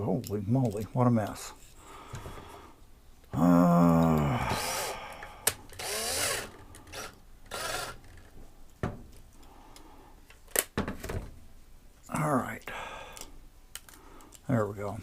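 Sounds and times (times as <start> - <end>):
power drill drilling metal: 5.8 - 8.0.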